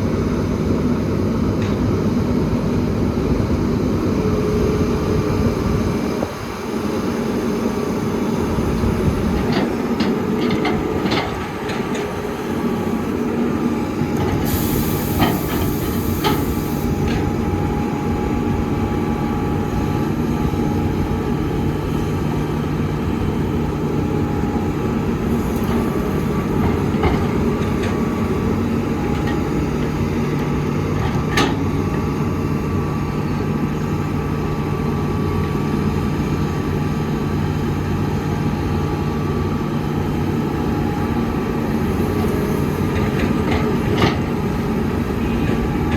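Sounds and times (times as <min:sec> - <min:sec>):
diesel engine under load: 0:00.0 - 0:45.9
brief hiss: 0:14.5 - 0:17.0.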